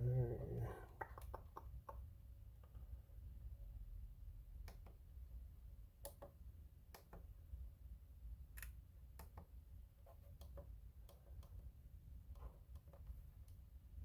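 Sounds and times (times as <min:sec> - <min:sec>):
low steady hum: 0:00.0 - 0:14.0
small clicks and taps: 0:00.9 - 0:02.8, 0:06.0 - 0:07.3, 0:08.5 - 0:09.5, 0:10.1 - 0:11.6.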